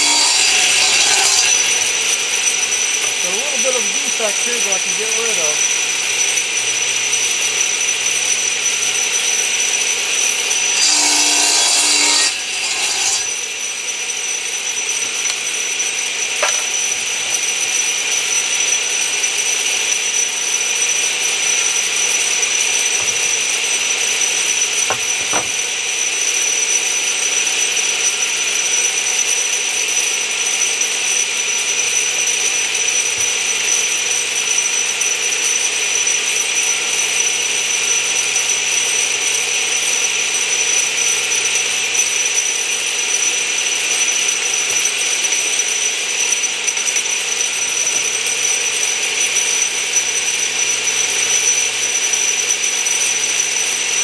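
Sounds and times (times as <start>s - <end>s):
power machinery whining: 0.0s - 2.2s, 10.4s - 13.3s
power saw cutting board: 0.0s - 13.7s, 14.8s - 18.4s, 21.8s - 25.8s.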